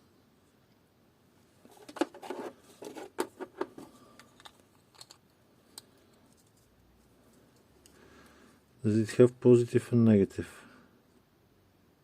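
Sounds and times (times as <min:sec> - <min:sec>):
small parts clicking and rattling: 0:01.8 - 0:06.7.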